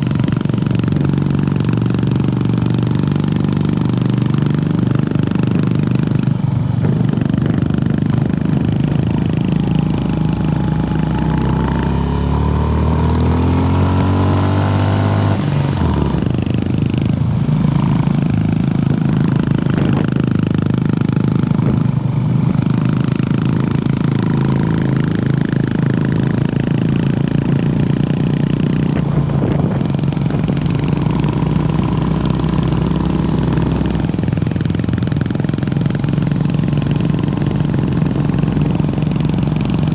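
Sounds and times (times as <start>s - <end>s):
motorcycle engine: 0.0s - 39.9s.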